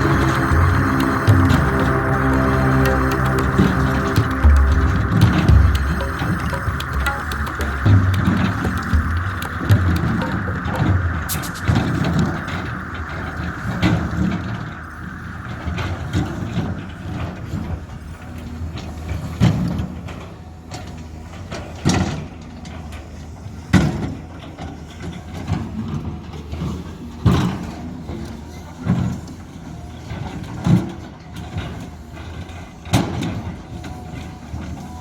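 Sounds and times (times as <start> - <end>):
excavator diesel engine: 0.0 - 18.7.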